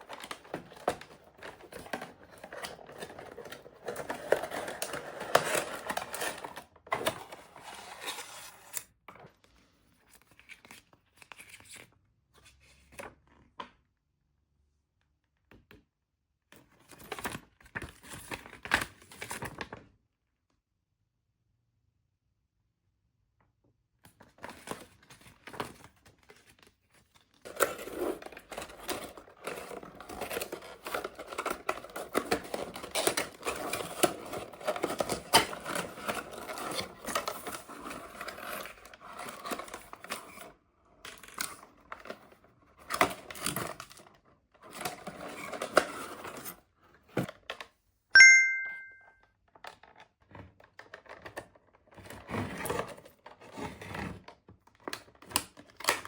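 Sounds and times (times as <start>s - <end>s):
short bright ringing tone: 48.2s - 49.1s.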